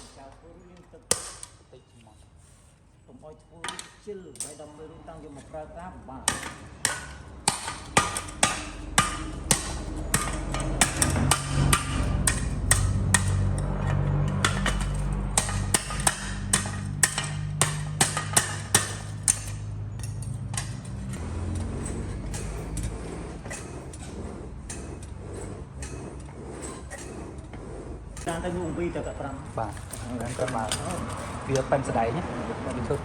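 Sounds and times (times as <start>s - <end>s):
hammer striking steel: 1.1s - 1.6s, 6.2s - 31.4s
steady low hum: 4.5s - 31.8s.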